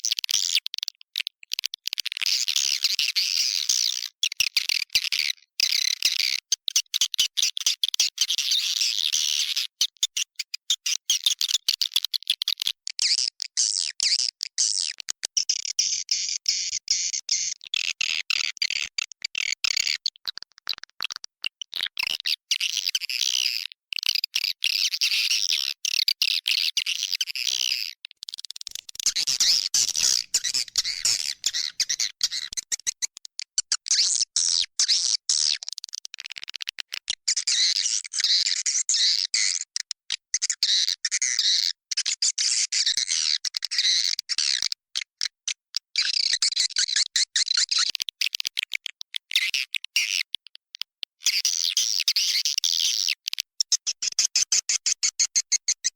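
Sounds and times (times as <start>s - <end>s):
swiftlets twittering and chirping: 28.7s - 33.0s.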